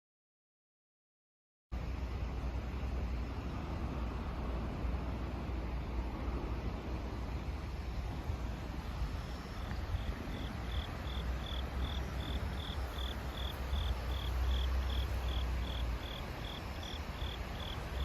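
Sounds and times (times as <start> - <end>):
low steady rumble: 1.8 - 18.0
insect chirping: 9.1 - 18.0.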